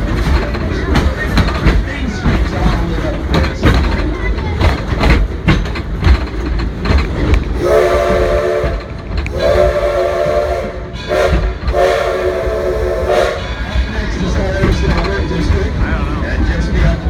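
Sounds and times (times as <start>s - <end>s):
moving train rumble and clack: 0.0s - 17.0s
steam locomotive whistle blasts: 7.6s - 13.5s.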